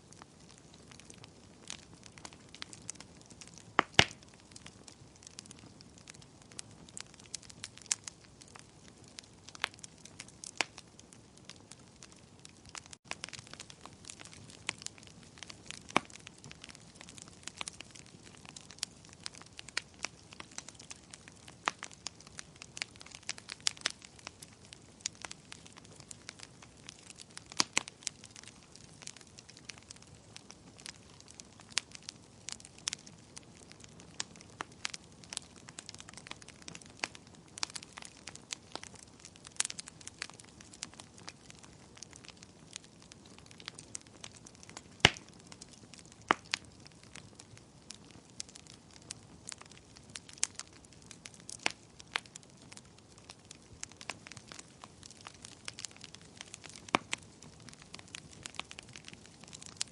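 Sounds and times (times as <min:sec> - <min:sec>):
fire crackling and popping: 0:00.0 - 0:59.9.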